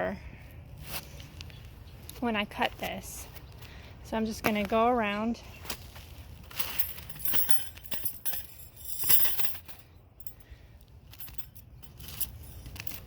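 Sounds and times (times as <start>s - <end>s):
metal stakes clinking and rattling: 6.4s - 13.0s.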